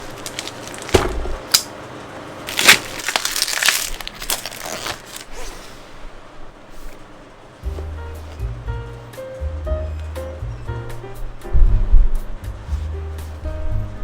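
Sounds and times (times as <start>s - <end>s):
packaging crinkling and rustling: 0.0s - 5.8s.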